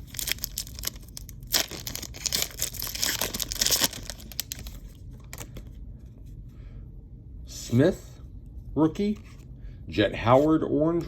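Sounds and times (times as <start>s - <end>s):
wrapper tearing and crinkling: 0.0s - 5.5s.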